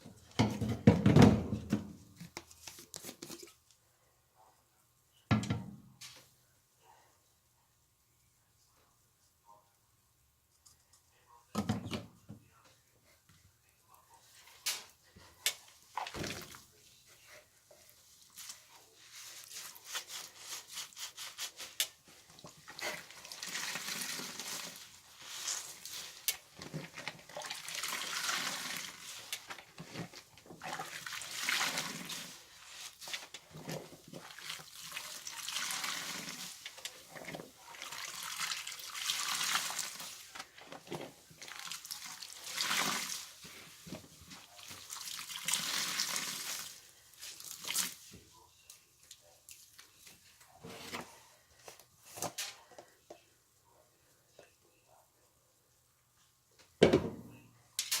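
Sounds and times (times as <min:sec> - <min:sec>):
wet blankets squelching: 0:18.0 - 0:40.4, 0:41.4 - 0:48.1.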